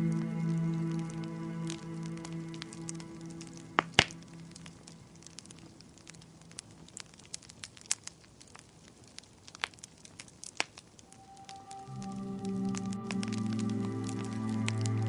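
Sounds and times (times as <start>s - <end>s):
soft music: 0.0s - 6.2s, 11.1s - 15.0s
wood fire crackling: 0.0s - 15.0s
sharp pops of fire: 3.7s - 11.6s.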